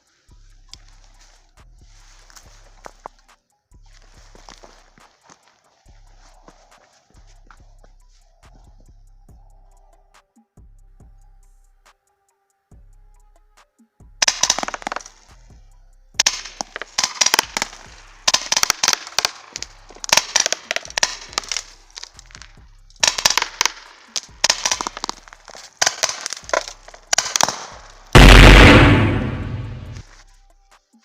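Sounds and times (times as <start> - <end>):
airgun firing rapid cracks: 14.2 - 15.2, 16.2 - 30.0
loud ringing crash: 28.2 - 30.0.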